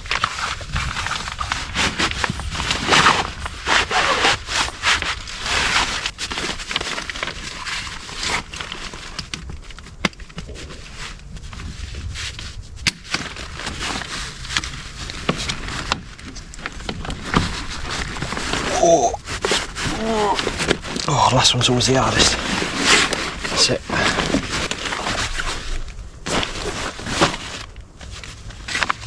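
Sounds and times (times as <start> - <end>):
fabric and frame rustling: 0.0 - 29.0.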